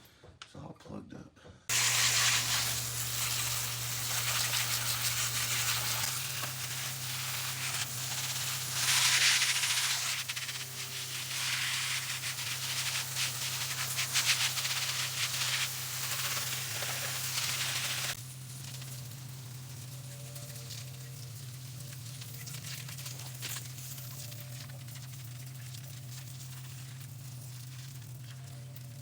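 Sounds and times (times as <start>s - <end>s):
loud rushing hiss with crackling: 1.7s - 22.7s.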